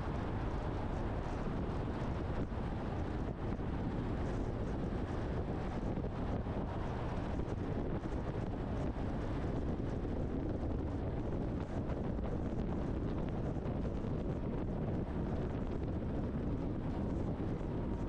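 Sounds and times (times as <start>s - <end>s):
truck driving on road: 0.0s - 18.0s.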